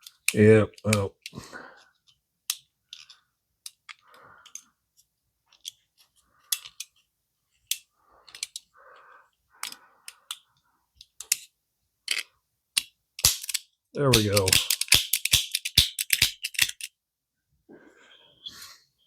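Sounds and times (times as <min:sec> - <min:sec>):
hand tool mechanism clicking: 0:12.8 - 0:16.9.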